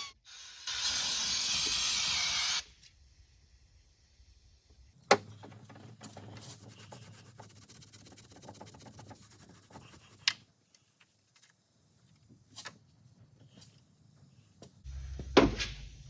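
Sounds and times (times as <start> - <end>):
pad rubbing scratchily: 6.1 - 10.2.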